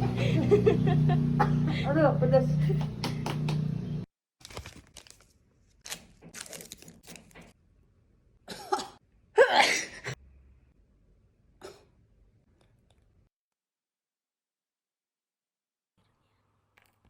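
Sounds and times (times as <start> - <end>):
person coughing: 8.5 - 10.2, 11.6 - 11.9.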